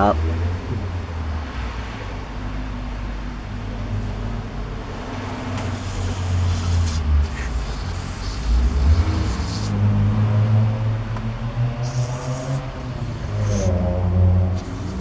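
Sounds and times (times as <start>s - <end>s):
aerosol spray hissing: 5.3s - 9.8s, 11.8s - 13.8s, 14.5s - 15.0s.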